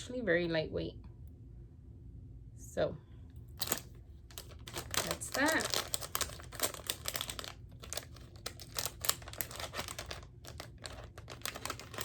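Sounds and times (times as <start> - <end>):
packaging crinkling: 3.5 - 12.0.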